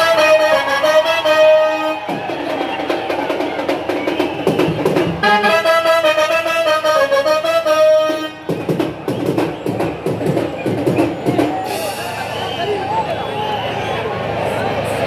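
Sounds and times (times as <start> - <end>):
brass band horns: 0.0 - 9.5
steady drum beat: 0.2 - 5.9, 8.2 - 12.5.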